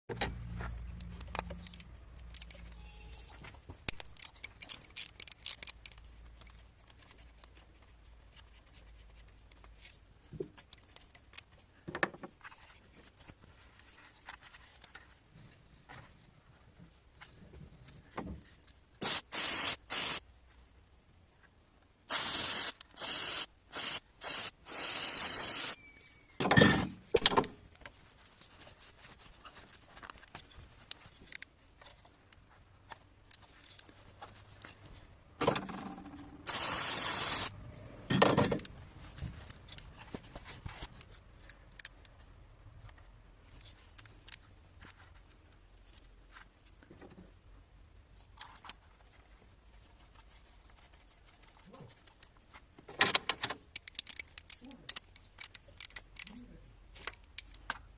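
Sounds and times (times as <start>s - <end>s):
aerosol spray hissing: 19.0s - 20.2s, 22.1s - 25.8s, 36.5s - 37.5s
handling knocks and clicks: 26.4s - 36.3s, 51.3s - 57.9s.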